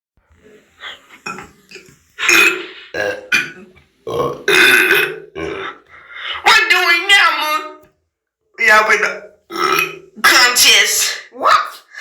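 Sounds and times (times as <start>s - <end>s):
person burping: 0.4s - 5.9s, 9.5s - 10.2s.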